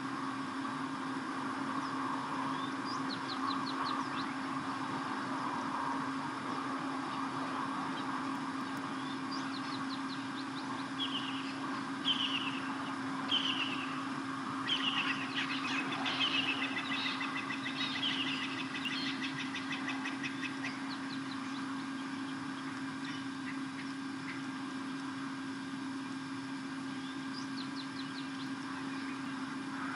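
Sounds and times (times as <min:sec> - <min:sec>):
low electrical hum: 0:00.0 - 0:29.9
lapwings metallic alarm calls: 0:08.9 - 0:24.5.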